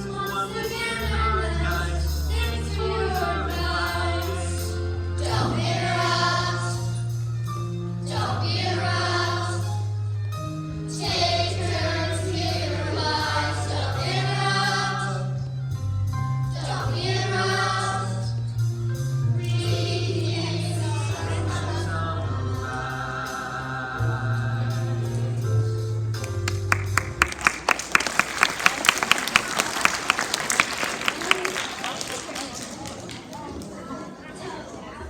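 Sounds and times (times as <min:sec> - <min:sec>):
children singing: 0:00.0 - 0:07.0, 0:16.6 - 0:18.3, 0:19.4 - 0:25.0
instrumental accompaniment: 0:02.2 - 0:31.4.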